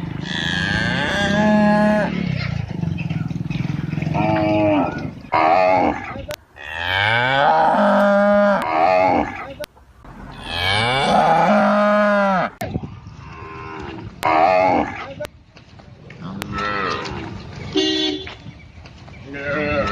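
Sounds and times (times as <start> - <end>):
calf mooing: 0.2 - 2.1, 4.2 - 9.5, 10.3 - 12.6, 19.3 - 19.9.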